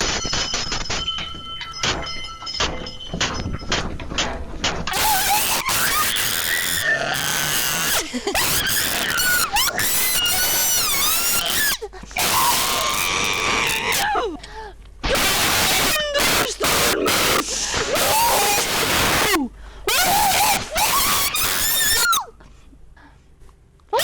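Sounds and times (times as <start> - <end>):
person screaming: 4.9 - 14.3, 15.0 - 22.3.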